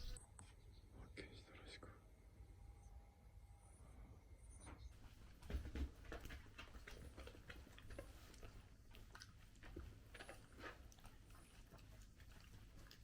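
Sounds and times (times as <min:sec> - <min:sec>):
dog chewing food: 0:05.5 - 0:13.0.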